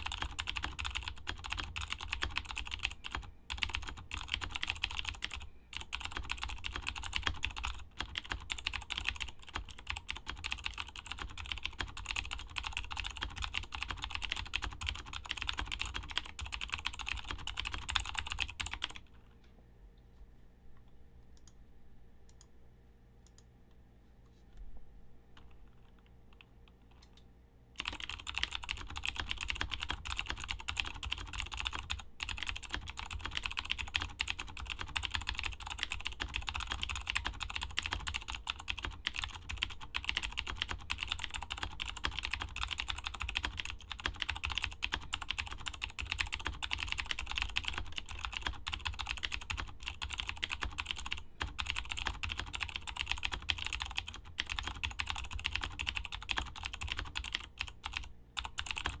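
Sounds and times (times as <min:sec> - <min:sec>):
clicky keyboard typing: 0:00.0 - 0:19.1, 0:20.8 - 0:21.6, 0:22.3 - 0:22.5, 0:23.2 - 0:23.5, 0:25.4 - 0:59.0.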